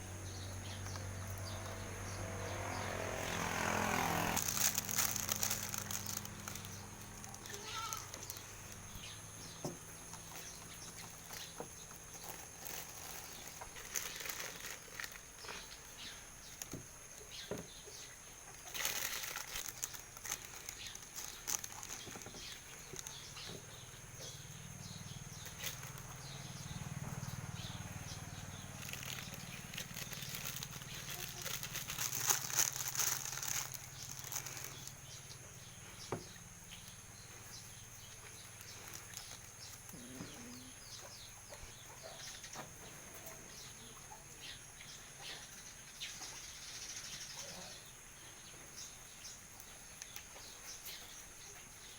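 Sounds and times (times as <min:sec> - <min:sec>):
rustling: 0:03.5 - 0:24.5, 0:25.3 - 0:26.4, 0:28.1 - 0:35.2, 0:35.8 - 0:40.6
animals pecking and clicking: 0:04.4 - 0:44.5, 0:49.3 - 0:51.9.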